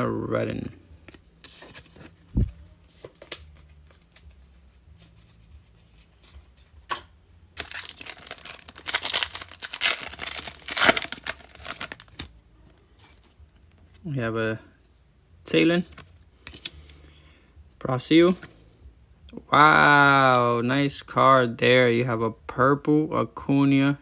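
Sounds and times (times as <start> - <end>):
wrapper tearing and crinkling: 7.6 - 12.3.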